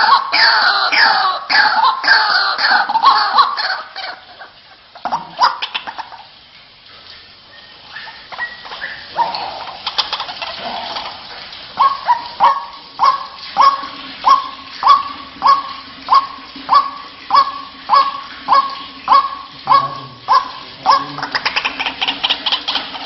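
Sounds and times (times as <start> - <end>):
waterhen honking calls: 0.0 - 6.3, 11.7 - 23.0.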